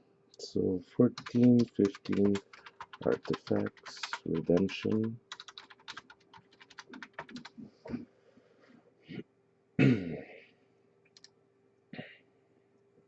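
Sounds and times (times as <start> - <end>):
typing on computer keyboard: 1.2 - 7.6
throat or voice sound: 9.8 - 10.4.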